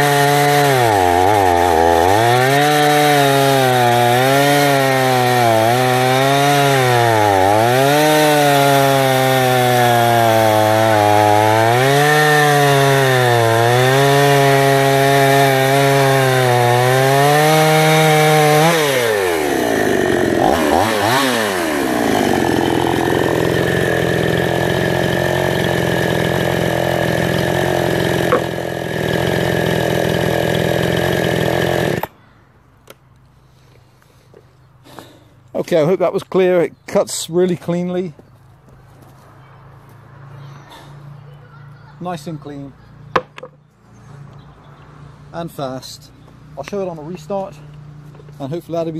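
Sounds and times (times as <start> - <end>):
chainsaw cutting through log: 0.0 - 32.1.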